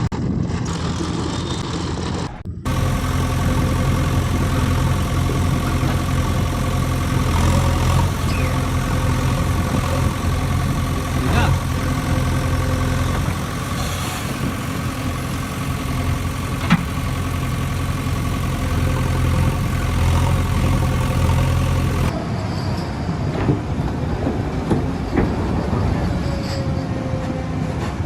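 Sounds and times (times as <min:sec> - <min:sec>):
heavy diesel engine running: 0:00.1 - 0:22.2
thin engine knocking: 0:02.7 - 0:22.1.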